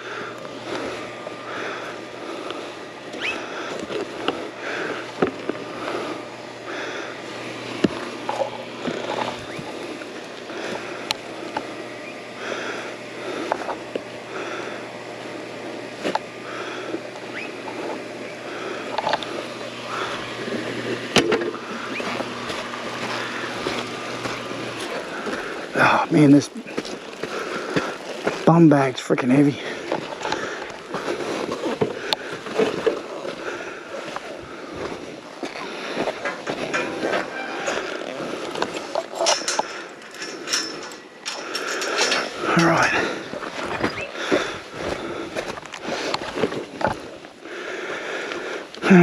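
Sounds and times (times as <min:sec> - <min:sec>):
dirt bike engine running: 0:00.0 - 0:47.4
sharp knocks and rattles: 0:38.5 - 0:42.8.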